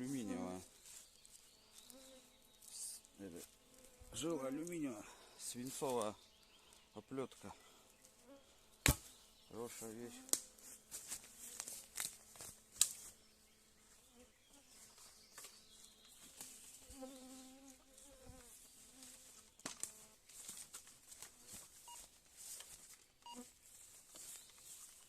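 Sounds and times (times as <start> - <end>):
flying insect buzzing: 1.7 - 2.4, 3.4 - 4.3, 16.3 - 20.2.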